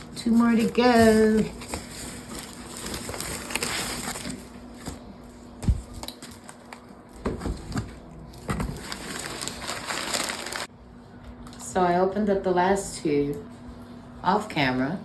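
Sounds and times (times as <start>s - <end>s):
packing paper rustling: 0.0s - 10.7s.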